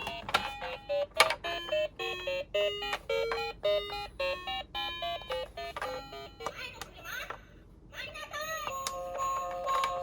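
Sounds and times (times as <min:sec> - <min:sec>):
toy beeping electronic tune: 0:00.0 - 0:06.6.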